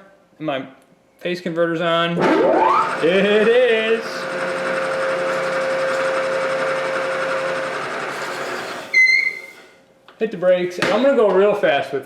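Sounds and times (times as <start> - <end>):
machine motor humming: 2.2 - 8.9
high squeal of slowing motor: 8.0 - 9.8.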